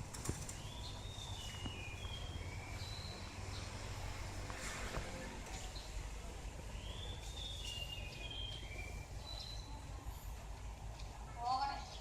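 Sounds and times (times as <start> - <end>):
bird whistling song: 0.6 - 3.3, 6.8 - 9.7.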